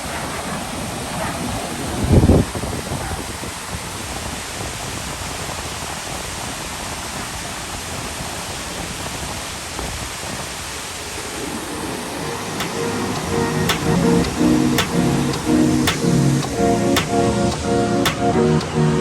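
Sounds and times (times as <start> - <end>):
waterfall rushing: 0.0 - 18.8
faint music: 12.2 - 19.0.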